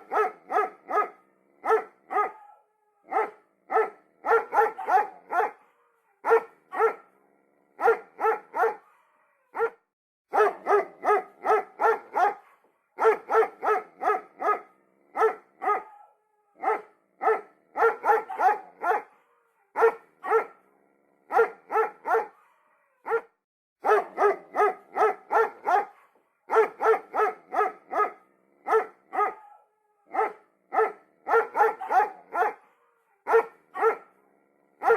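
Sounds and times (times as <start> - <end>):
dog barking: 0.0 - 34.9.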